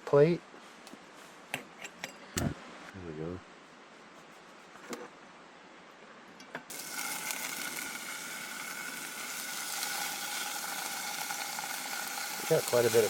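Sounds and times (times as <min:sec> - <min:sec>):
bacon sizzling in a pan: 0:06.7 - 0:13.0.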